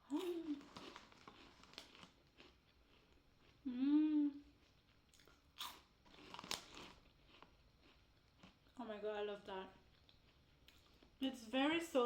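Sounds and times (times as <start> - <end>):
crunching and chewing corn puffs: 0.0 - 3.8, 4.4 - 8.8, 9.8 - 11.2
person humming mmm: 3.6 - 4.5.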